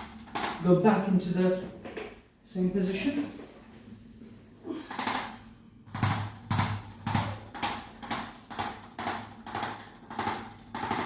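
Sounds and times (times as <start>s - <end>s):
rhythmic thumps on treatment table: 4.9s - 11.0s.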